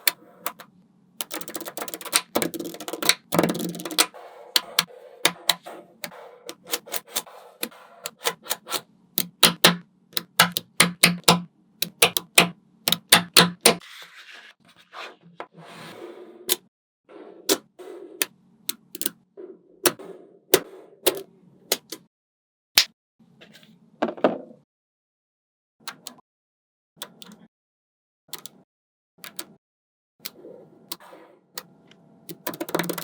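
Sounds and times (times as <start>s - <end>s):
magnetic balls clicking together: 0.0s - 7.3s, 9.2s - 13.8s, 32.3s - 33.0s.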